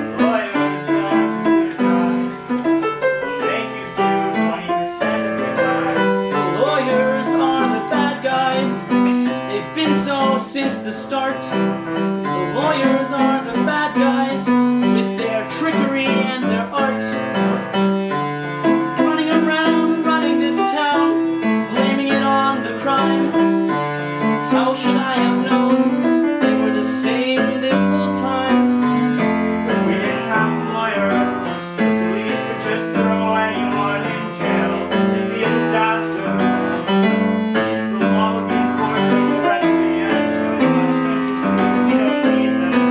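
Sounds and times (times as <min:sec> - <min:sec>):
piano playing chords: 0:00.0 - 0:42.9.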